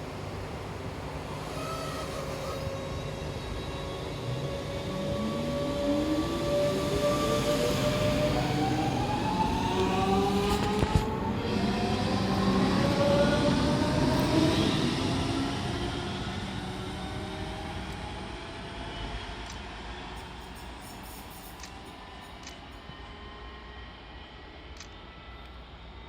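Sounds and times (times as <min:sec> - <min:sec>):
electric train motors whining: 0:00.9 - 0:10.9.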